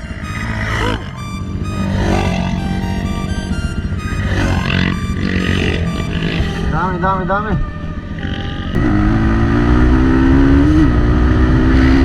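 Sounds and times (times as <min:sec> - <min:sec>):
low pulsing beat: 0:00.0 - 0:06.8
held synth notes: 0:00.0 - 0:11.6.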